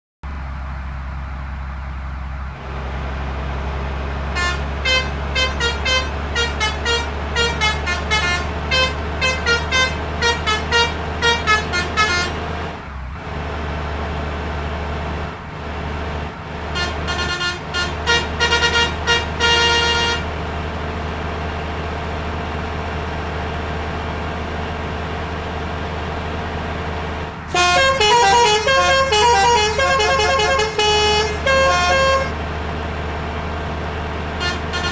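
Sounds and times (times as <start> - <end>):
low engine drone: 0.2 - 13.2, 14.1 - 34.9
multi-tone musical bus horn: 4.3 - 12.6, 16.7 - 20.4, 27.5 - 32.4, 34.4 - 34.9.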